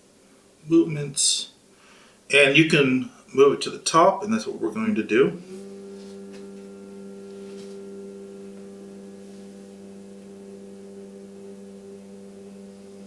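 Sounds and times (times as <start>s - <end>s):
stepper motor hum: 4.6s - 13.0s.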